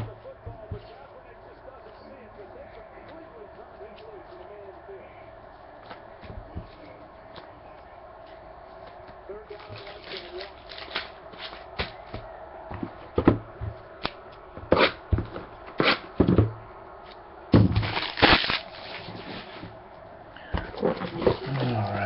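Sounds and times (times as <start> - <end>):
cards clicking and snapping: 8.8 - 12.0
packaging crinkling rustle: 9.5 - 11.8, 17.8 - 19.8.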